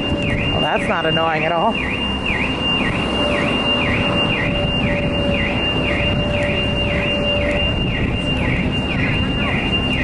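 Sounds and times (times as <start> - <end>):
electronic alarm swooping tone: 0.0 - 10.0.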